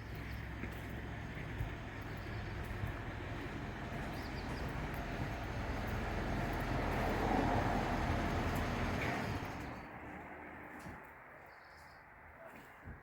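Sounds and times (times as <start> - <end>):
van engine running: 0.0 - 10.2.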